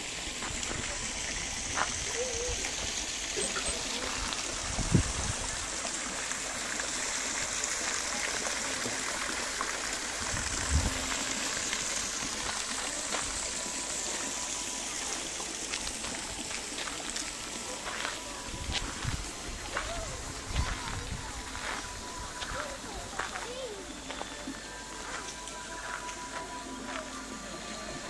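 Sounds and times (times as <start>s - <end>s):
stream flowing: 0.0s - 28.0s.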